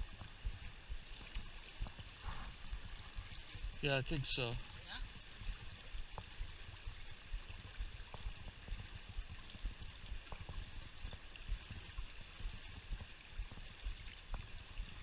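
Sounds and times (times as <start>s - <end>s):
low thumps on microphone: 0.0s - 3.8s, 5.4s - 15.0s
river water rushing: 0.3s - 6.0s.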